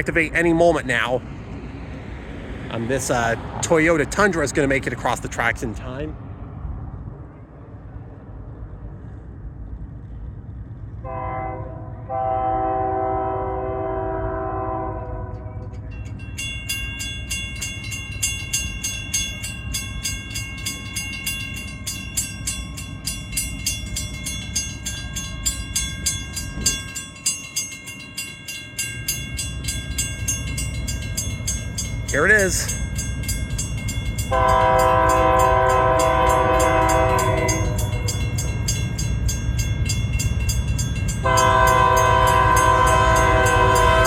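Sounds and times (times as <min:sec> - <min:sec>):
crossing warning bells ringing: 0:00.0 - 0:05.9, 0:11.1 - 0:44.0
train horn blast: 0:11.0 - 0:15.6, 0:34.3 - 0:38.2, 0:41.2 - 0:44.0.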